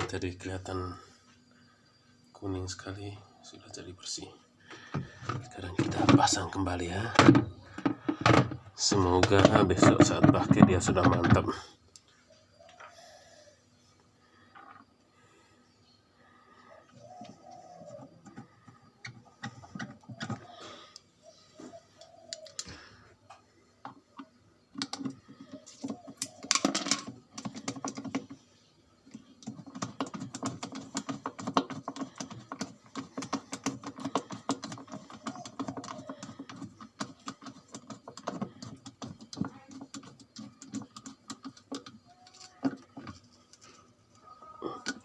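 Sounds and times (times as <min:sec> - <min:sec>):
hard objects clicking and rattling: 0:04.7 - 0:11.6, 0:17.0 - 0:21.1, 0:23.8 - 0:43.9.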